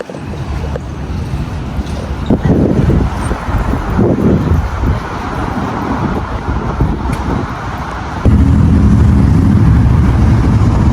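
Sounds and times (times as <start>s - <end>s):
street traffic rumbling: 0.0s - 10.9s
low steady drone: 8.0s - 10.9s.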